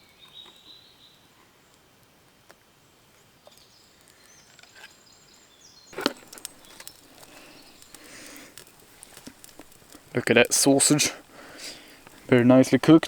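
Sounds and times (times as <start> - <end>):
sharp wood crack: 6.0 - 13.0
small scattered crackles: 6.0 - 13.0.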